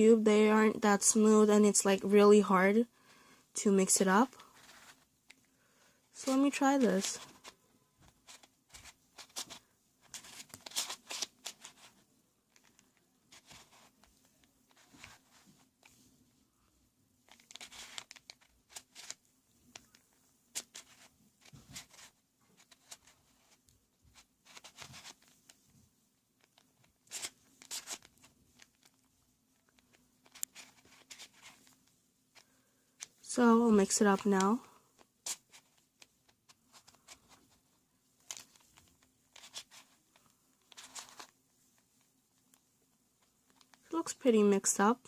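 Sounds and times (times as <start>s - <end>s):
puzzle cube layers clicking: 17.3s - 21.1s.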